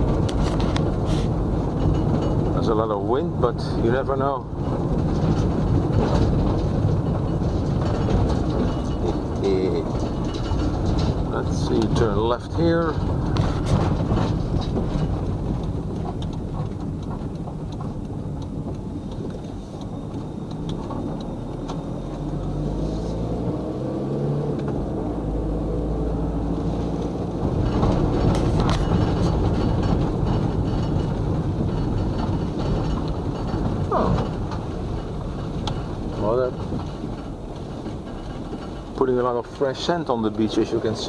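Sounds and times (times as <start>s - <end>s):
car engine: 0.0s - 41.0s
road noise: 0.0s - 41.0s.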